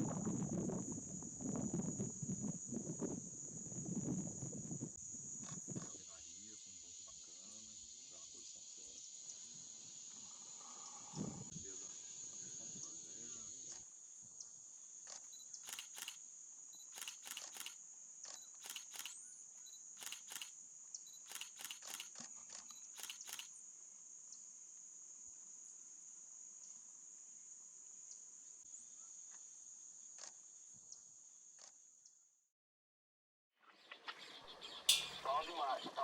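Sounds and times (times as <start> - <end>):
insect chorus: 0.0 - 32.2, 34.9 - 36.0
sharp clicks: 15.1 - 16.2, 16.9 - 19.2, 20.0 - 20.5, 21.3 - 23.5.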